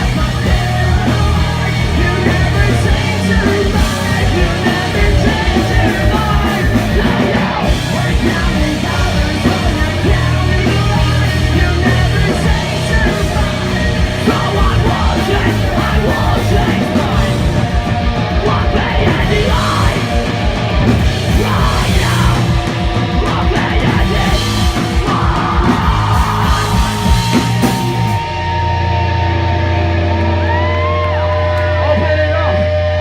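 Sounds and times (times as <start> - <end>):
pounding drums: 0.0 - 28.6
distorted guitars: 0.0 - 33.0
punk rock band playing live: 0.0 - 33.0
yelled vocals: 0.0 - 33.0.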